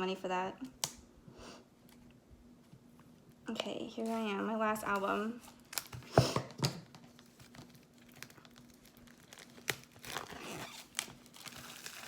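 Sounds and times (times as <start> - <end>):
packaging rustling: 5.4 - 12.0
sharp packaging crinkles: 7.0 - 12.0.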